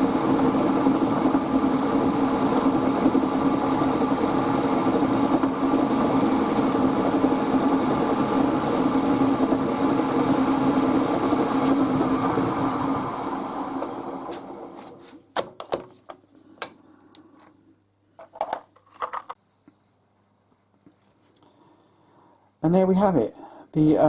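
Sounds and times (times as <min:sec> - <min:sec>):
workshop machine motor hum: 0:00.0 - 0:15.2.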